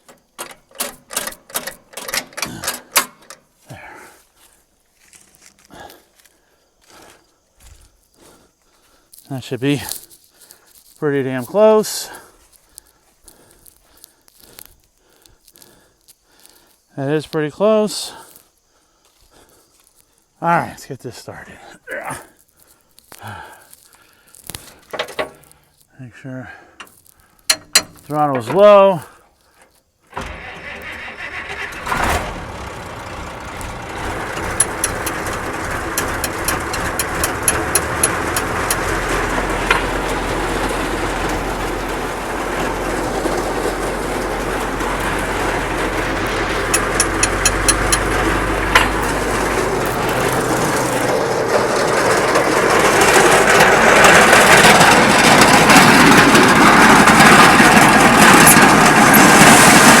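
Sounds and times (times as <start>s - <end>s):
farm engine running: 0.0s - 7.1s, 26.8s - 29.0s, 30.1s - 60.0s
rushing noise: 30.2s - 60.0s
rhythmic ticking of machinery: 33.6s - 41.5s, 46.5s - 51.0s.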